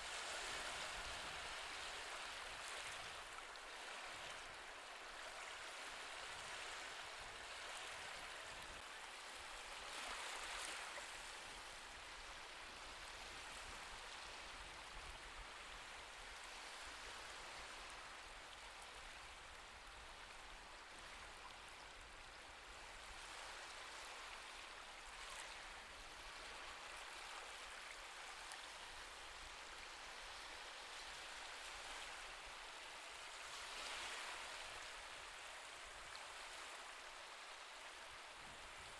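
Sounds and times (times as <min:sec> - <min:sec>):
ocean waves: 0:00.0 - 0:11.3, 0:26.2 - 0:38.9.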